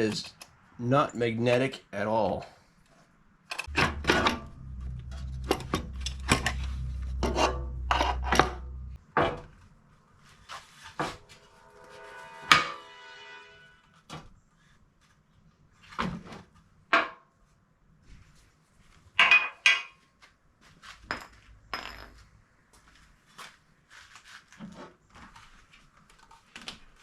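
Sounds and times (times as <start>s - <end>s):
low steady hum: 3.5s - 9.6s.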